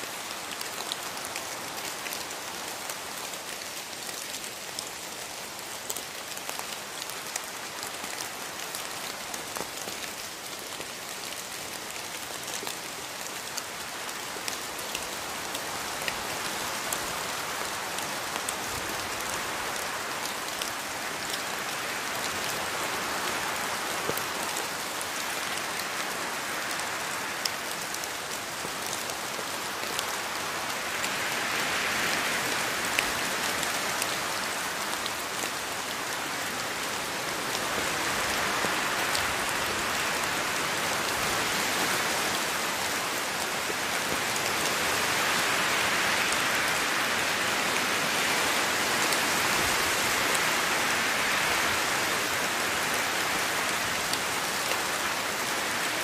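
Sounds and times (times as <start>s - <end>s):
rain pattering on leaves: 0.0s - 56.0s.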